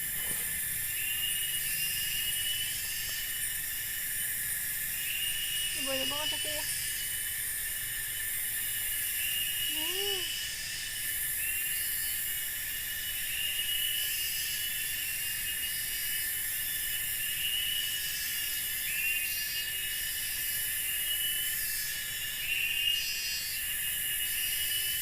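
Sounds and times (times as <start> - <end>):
insect chorus buzzing: 0.0 - 25.0
pulsing insect hiss: 0.0 - 25.0.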